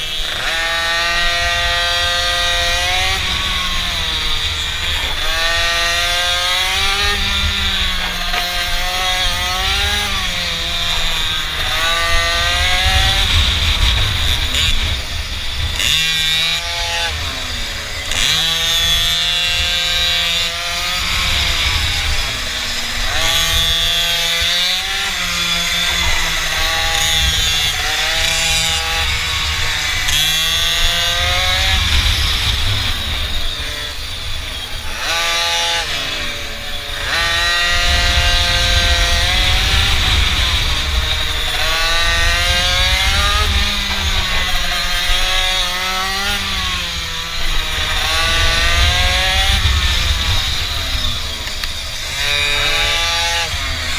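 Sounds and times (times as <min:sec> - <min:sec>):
mini bike engines revving: 0:00.0 - 0:53.9
wind rumble on microphone: 0:00.8 - 0:53.9.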